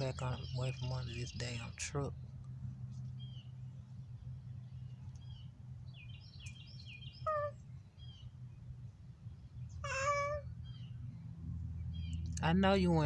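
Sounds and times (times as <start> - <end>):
small birds chirping: 0.0 - 13.0
steady low hum: 0.0 - 13.0
cat meowing: 7.2 - 7.6, 9.8 - 10.5.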